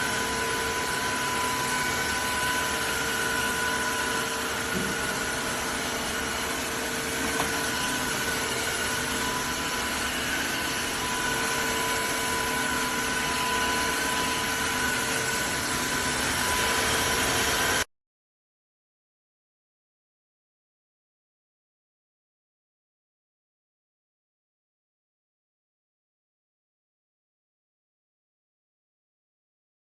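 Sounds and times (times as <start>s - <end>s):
vacuum mop motor hum: 0.0s - 17.8s.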